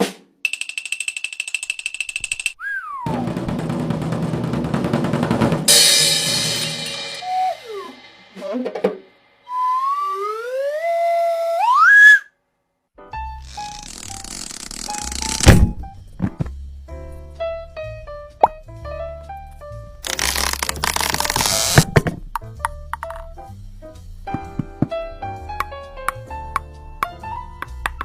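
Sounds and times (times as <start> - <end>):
falling whistle: 2.6 - 3.3, 7.0 - 8.6, 9.4 - 12.3
slide whistle rising: 2.6 - 3.3, 7.0 - 8.5, 9.4 - 12.3
drum roll: 3.1 - 9.2, 24.3 - 25.1
cymbal crash: 5.6 - 9.4
short sliding tones: 13.4 - 15.5.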